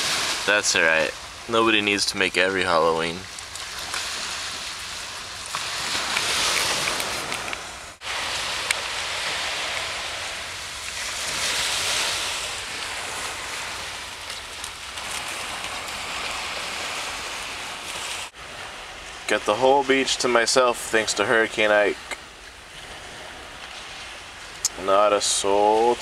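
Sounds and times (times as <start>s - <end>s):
surf breaking on beach: 0.0s - 26.0s.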